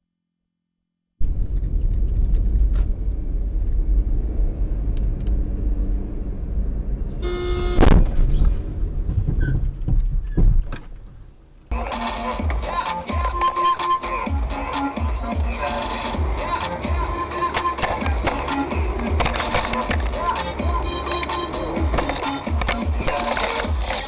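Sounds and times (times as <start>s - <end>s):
loud bang: 1.2s - 11.3s
road and engine rumble: 1.2s - 24.0s
car horn: 7.2s - 8.1s, 15.5s - 23.6s.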